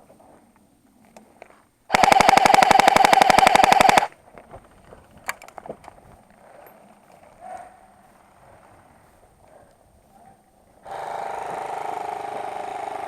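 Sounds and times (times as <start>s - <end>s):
airsoft gun full-auto burst: 1.9s - 4.1s.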